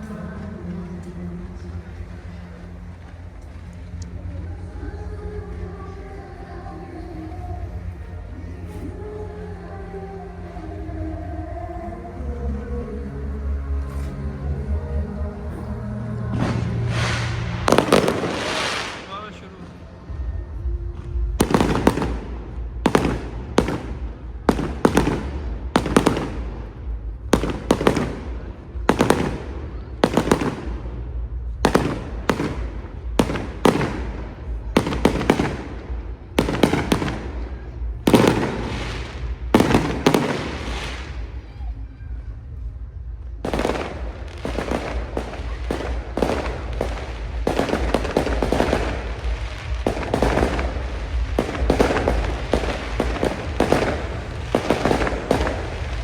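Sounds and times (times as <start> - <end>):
fireworks bangs: 15.5 - 20.4, 21.1 - 41.5, 42.8 - 56.0.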